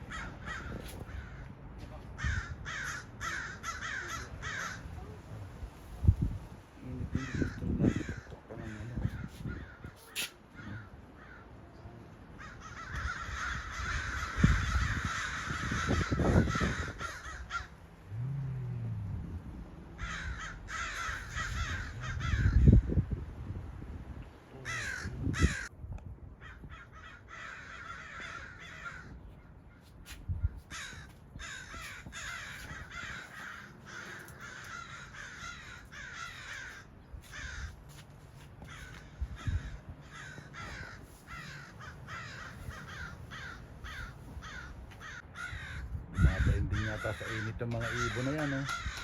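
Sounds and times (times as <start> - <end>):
birds calling: 7.1 - 23.2, 26.4 - 49.0.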